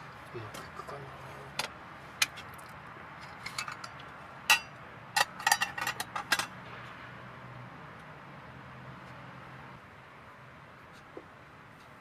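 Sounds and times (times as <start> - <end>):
metal cookware clinking: 4.5 - 6.5.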